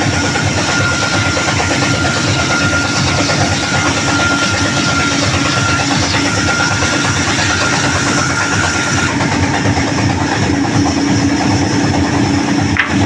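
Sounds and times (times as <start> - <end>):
sawmill machinery running: 0.0 - 13.0.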